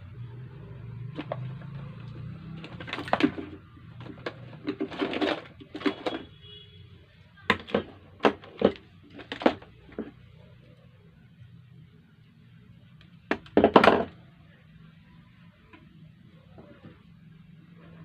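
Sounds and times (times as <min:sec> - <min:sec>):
small parts and tools clattering: 0:01.1 - 0:06.4, 0:07.5 - 0:10.2, 0:13.3 - 0:14.2.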